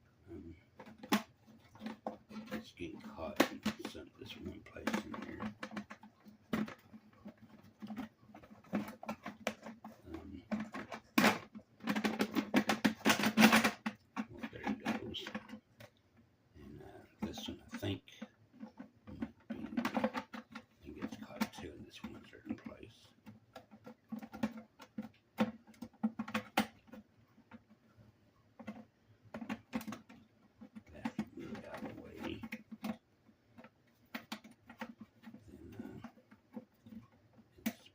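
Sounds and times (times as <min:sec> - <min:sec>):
toy sliding door clicks and scrapes: 0:00.8 - 0:15.5.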